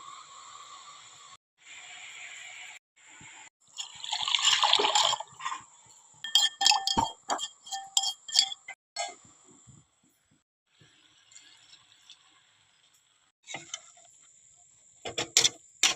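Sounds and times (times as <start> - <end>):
metal spoon clinking on pot: 6.3 - 9.2.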